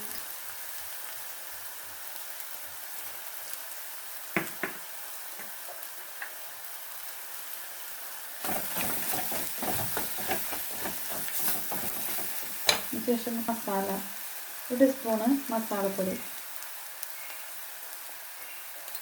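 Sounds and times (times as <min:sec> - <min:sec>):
masala sizzling in a pan: 0:00.0 - 0:19.0
stirring in a pan: 0:08.4 - 0:14.4.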